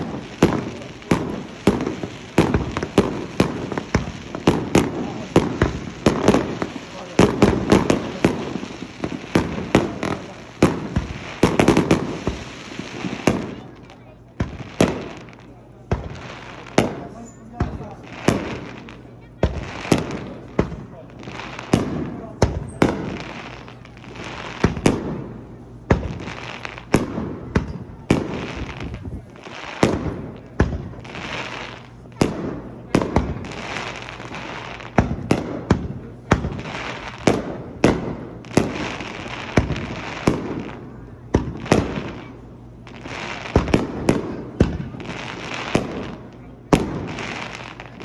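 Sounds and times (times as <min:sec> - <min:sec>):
fireworks bursting with sharp bangs: 0:00.0 - 0:48.0.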